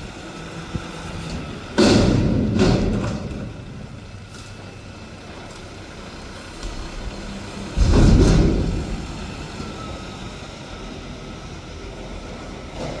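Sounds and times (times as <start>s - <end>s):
garbage truck engine rumble: 0.0s - 13.0s
loud low engine surge: 6.7s - 10.2s.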